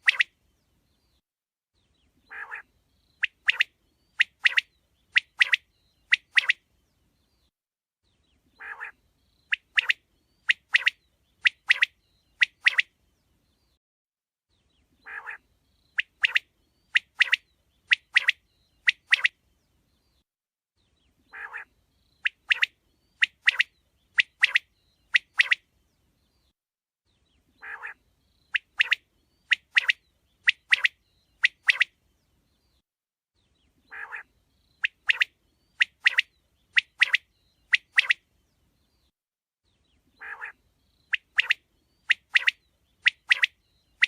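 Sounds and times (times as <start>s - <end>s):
quail calling: 0.0s - 0.3s, 2.3s - 4.6s, 8.6s - 9.0s, 15.0s - 15.4s, 21.3s - 21.7s, 27.6s - 28.0s, 33.9s - 37.2s, 40.2s - 43.5s.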